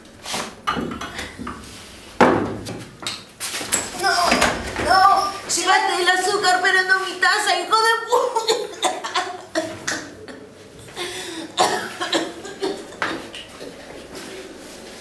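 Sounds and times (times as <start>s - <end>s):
person coughing: 8.2s - 13.3s.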